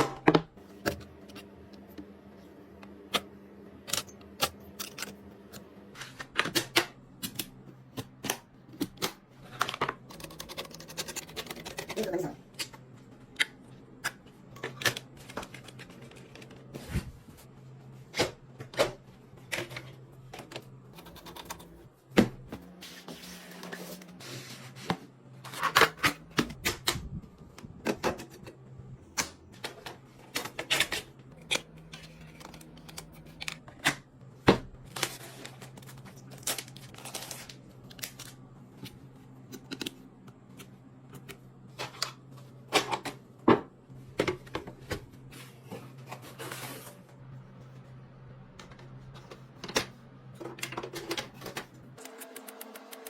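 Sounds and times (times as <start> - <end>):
computer parts clicking and clattering: 8.2 - 12.7.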